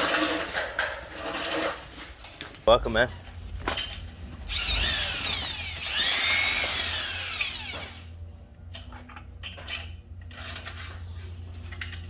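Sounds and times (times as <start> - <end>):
power tool whining: 4.5 - 8.1.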